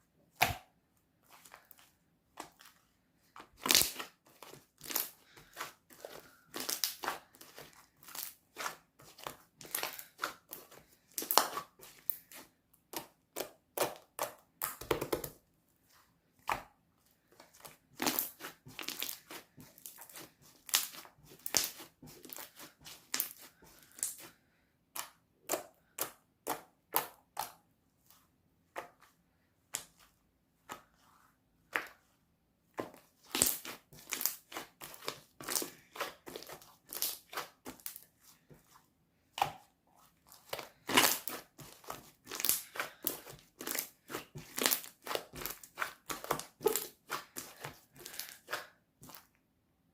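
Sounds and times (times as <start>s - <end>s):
slime clicking and crackling: 3.6s - 4.1s, 6.4s - 12.4s, 18.0s - 24.2s, 33.3s - 38.0s, 40.4s - 49.2s.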